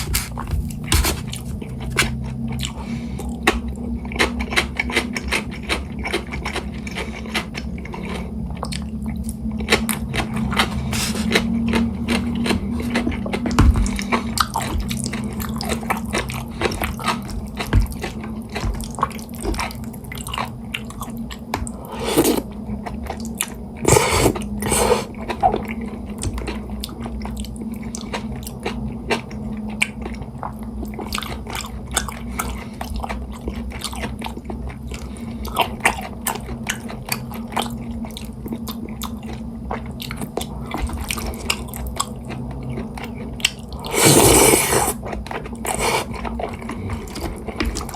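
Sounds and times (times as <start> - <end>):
noodle slurps: 0.0 - 2.1, 10.6 - 11.5, 21.9 - 22.4, 23.8 - 25.1, 43.8 - 45.0, 45.7 - 46.2
chewing and wet mouth sounds: 0.0 - 47.9.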